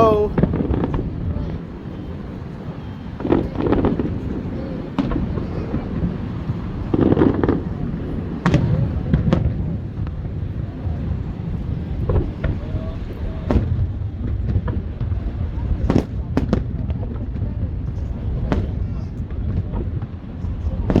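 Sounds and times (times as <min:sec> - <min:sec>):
low rumble of fireworks: 0:00.0 - 0:21.0.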